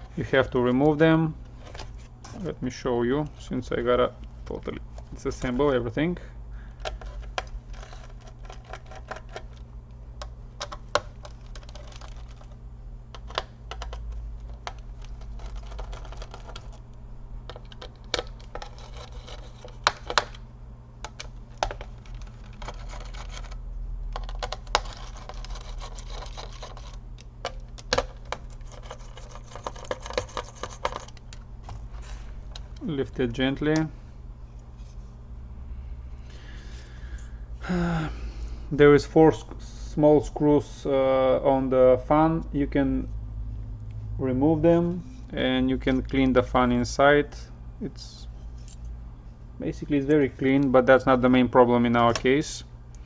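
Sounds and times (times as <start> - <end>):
steady low hum: 0.0 - 53.0
screwdriver clicking and scraping: 6.8 - 9.6, 21.1 - 23.6, 24.2 - 32.8.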